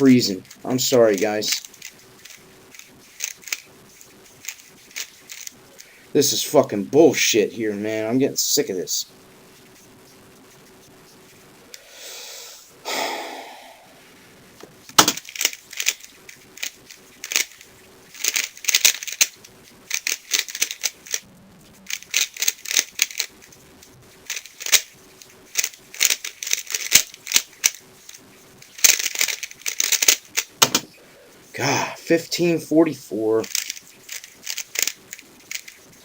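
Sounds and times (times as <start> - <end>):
puzzle cube plastic clicking: 0.0 - 5.9, 14.8 - 21.2, 21.9 - 23.5, 24.2 - 31.0, 33.4 - 36.0.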